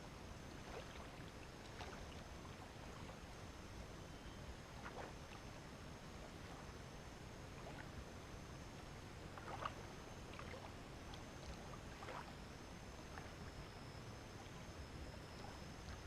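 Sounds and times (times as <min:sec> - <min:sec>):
water lapping and splashing: 0:00.5 - 0:03.3, 0:04.7 - 0:06.7, 0:07.4 - 0:08.1, 0:09.2 - 0:13.7
faint high-pitched tone: 0:03.0 - 0:04.7, 0:11.3 - 0:16.0.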